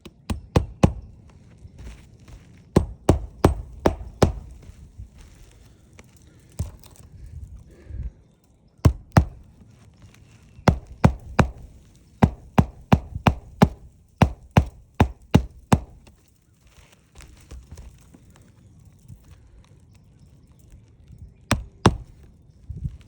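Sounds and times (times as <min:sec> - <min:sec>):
hand hammer strikes: 0:00.0 - 0:01.1, 0:02.8 - 0:04.6, 0:08.9 - 0:09.4, 0:10.7 - 0:16.1, 0:21.5 - 0:22.2.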